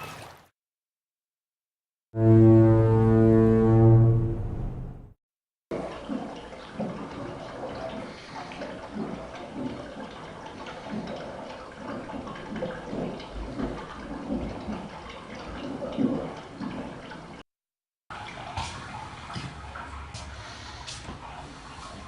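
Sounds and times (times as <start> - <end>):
water running and splashing: 0.0 - 0.5, 5.7 - 17.4, 18.1 - 22.0.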